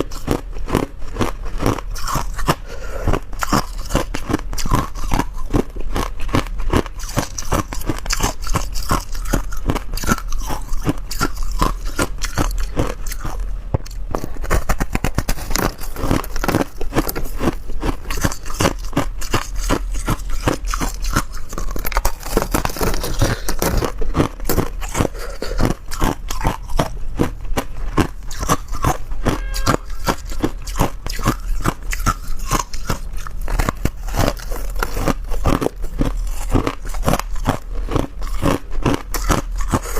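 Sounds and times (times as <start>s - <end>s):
teeth crunching ice: 0.0s - 39.9s.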